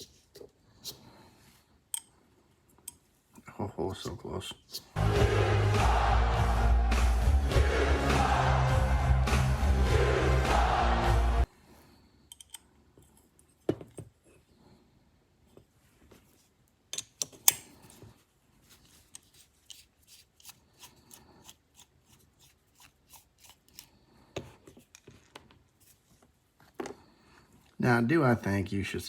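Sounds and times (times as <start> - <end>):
knife parts clicking: 12.3 - 12.6.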